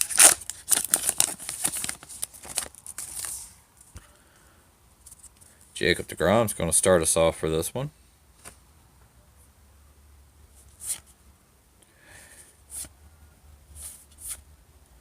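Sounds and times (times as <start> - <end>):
cards swishing: 10.6 - 11.1, 13.8 - 14.5.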